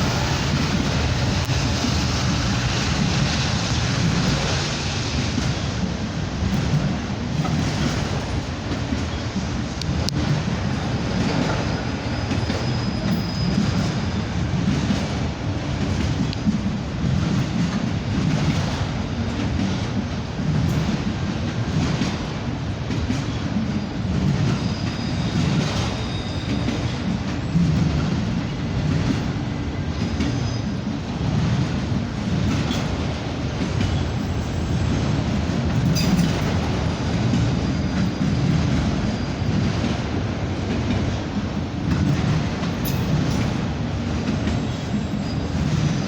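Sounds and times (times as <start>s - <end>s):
freight train rumbling: 0.0s - 46.0s
faint high wheel squeal: 11.5s - 14.3s, 23.8s - 27.8s, 30.1s - 30.8s, 35.9s - 39.6s, 44.5s - 46.0s.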